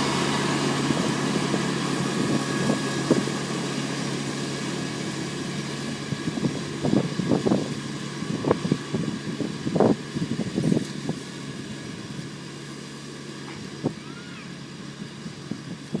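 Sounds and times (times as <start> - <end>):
ride-on mower engine running: 0.0 - 16.0.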